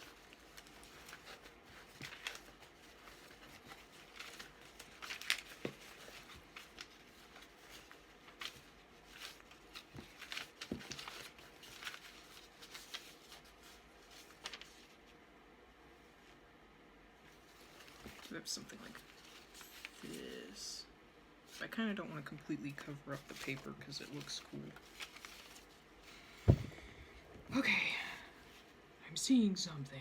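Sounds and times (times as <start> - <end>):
paper rustling and crinkling: 0.0 - 15.2, 17.2 - 20.5, 22.7 - 27.3.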